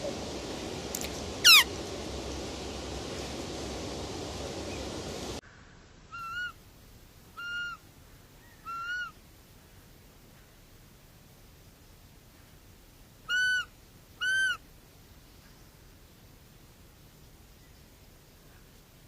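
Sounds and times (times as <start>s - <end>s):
background hiss: 0.0s - 19.0s
deer squealing: 1.4s - 1.7s
deer whistling calls: 1.4s - 1.7s.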